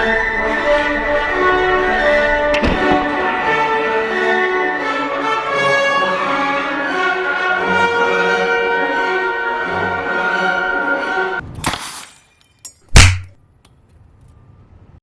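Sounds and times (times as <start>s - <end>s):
orchestral music with bowed strings: 0.0s - 11.4s.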